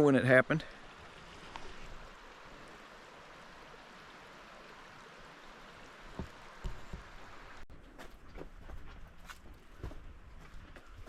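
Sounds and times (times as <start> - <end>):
creek water rushing: 0.0 - 7.6.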